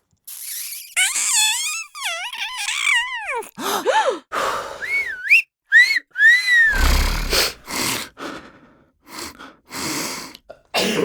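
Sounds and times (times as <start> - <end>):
sharp whistle: 4.8 - 6.7
wolf whistle: 4.8 - 6.7
breathy snorts and sniffs: 6.7 - 8.4
exhaled breath: 6.7 - 10.4.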